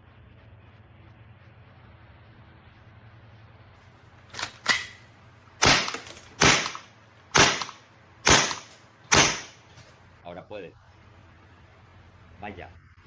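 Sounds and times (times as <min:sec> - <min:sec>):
airsoft pistol shots: 0:04.3 - 0:09.7.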